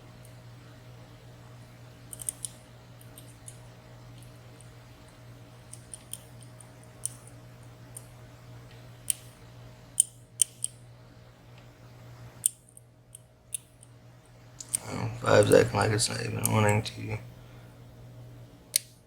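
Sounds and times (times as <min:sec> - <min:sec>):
steady low hum: 0:00.0 - 0:19.0
lock pick metallic clicks: 0:02.1 - 0:03.6, 0:10.0 - 0:10.8, 0:18.7 - 0:19.0.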